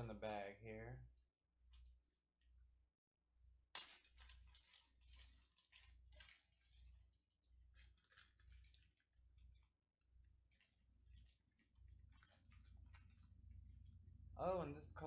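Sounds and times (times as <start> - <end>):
soft rustling of a bag: 4.0 - 14.2.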